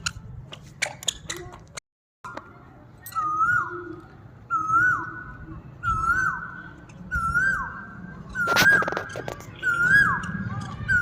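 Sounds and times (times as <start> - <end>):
bird swooping call: 5.8 - 10.3.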